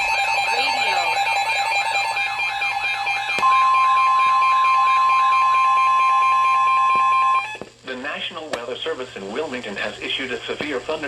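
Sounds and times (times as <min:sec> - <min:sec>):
steady warning alarm tone: 0:00.0 - 0:07.6.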